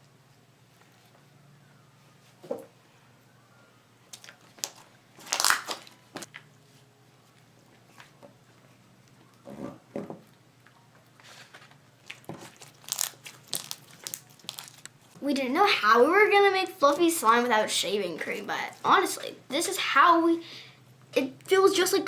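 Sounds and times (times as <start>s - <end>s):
slime squishing: 12.0s - 15.1s.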